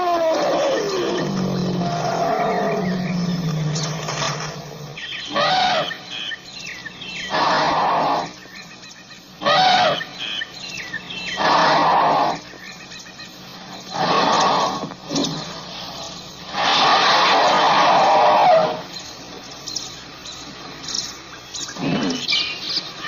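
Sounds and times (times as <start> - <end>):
elephant calling: 0.0 - 19.1, 20.8 - 23.0.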